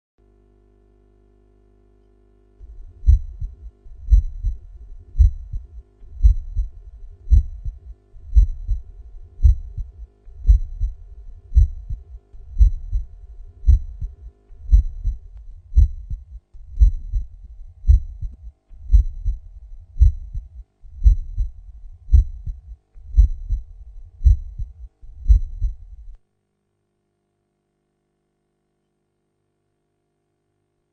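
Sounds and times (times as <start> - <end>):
heartbeat: 2.6 - 26.2.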